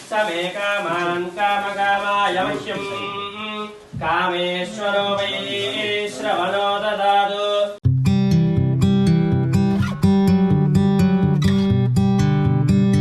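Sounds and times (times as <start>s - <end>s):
person singing: 0.0s - 7.8s
strummed acoustic guitar: 7.8s - 13.0s.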